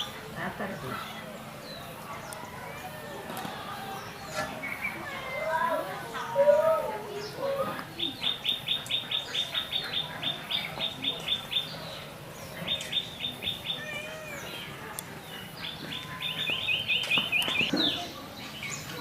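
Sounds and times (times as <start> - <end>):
bird chirping: 7.2 - 19.0.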